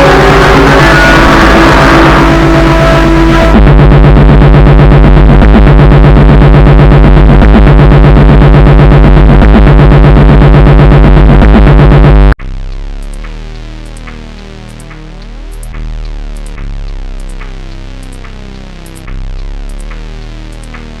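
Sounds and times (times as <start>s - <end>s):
distorted electronic music: 0.0s - 21.0s.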